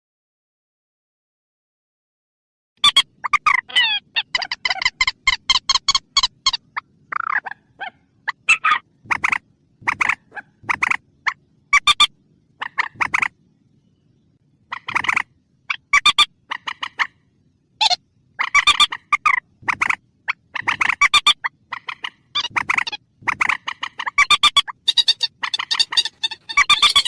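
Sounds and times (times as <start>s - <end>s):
bird clucking calls: 2.8s - 13.4s, 14.6s - 27.0s
faint steady low hum: 2.8s - 27.0s.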